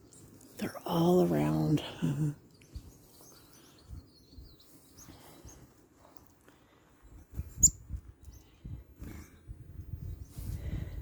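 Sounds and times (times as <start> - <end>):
songbirds chirping: 0.0 - 11.0
wind on microphone: 7.1 - 11.0.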